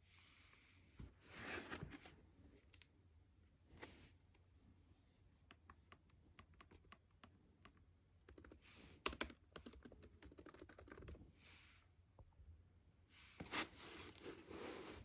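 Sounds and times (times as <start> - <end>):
laptop keyboard typing: 5.7 - 11.2.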